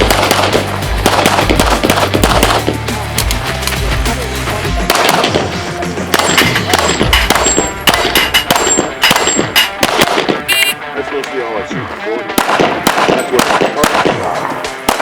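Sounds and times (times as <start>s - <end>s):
pistol shots: 0.0s - 2.7s, 4.8s - 10.8s, 12.4s - 15.0s
steel targets clanging: 6.2s - 9.8s.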